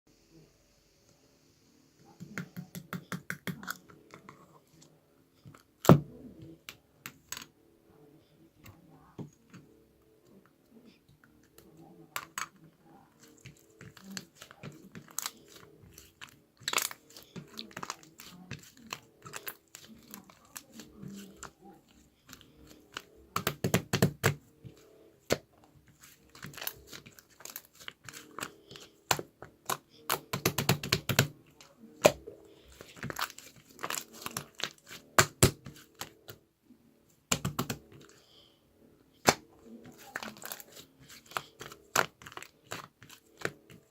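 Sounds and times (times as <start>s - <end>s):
crinkling handling noises: 24.6s - 30.4s, 31.2s - 36.4s, 39.2s - 43.9s.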